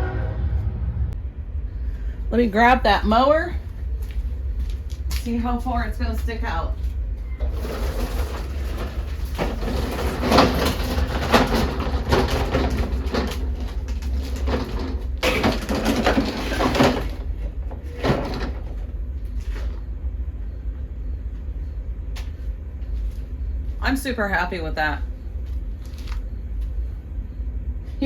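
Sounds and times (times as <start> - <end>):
lawn mower rattling and clattering: 7.4 - 18.8.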